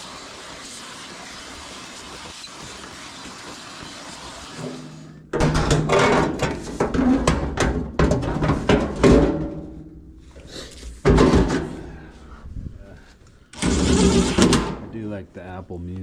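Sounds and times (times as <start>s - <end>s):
vacuum hissing: 0.0s - 5.3s
tools knocking and clattering: 5.3s - 9.8s.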